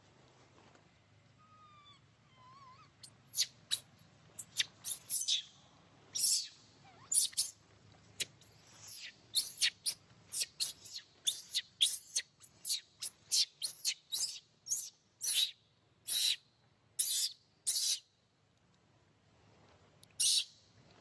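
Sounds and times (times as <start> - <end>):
baby monkey squealing: 1.4 - 5.4, 6.2 - 7.5, 8.7 - 15.5, 16.1 - 16.4, 17.0 - 18.0, 20.2 - 20.5.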